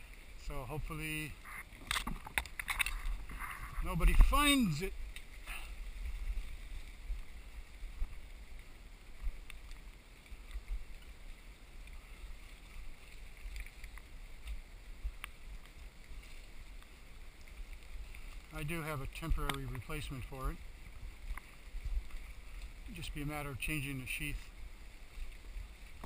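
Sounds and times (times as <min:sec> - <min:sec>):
wind rumble on microphone: 0:01.4 - 0:26.0
faint clicks: 0:05.0 - 0:05.4, 0:06.8 - 0:20.2, 0:20.8 - 0:22.9.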